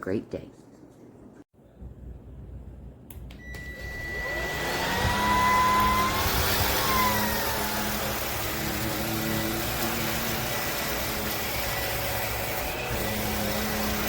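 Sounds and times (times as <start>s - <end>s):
vacuum motor whine: 3.4s - 14.0s.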